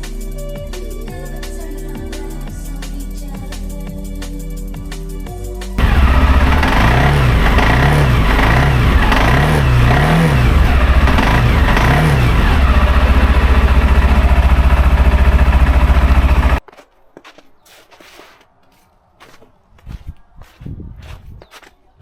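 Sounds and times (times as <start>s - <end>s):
vehicle engine revving: 5.8s - 16.6s.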